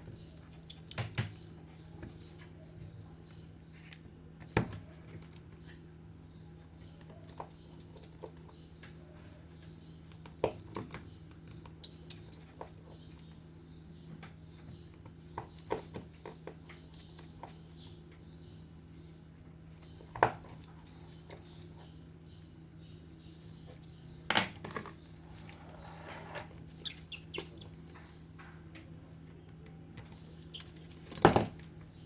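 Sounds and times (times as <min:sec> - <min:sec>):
small tools clicking and tapping: 0:00.4 - 0:02.5, 0:10.0 - 0:13.4, 0:26.4 - 0:32.0.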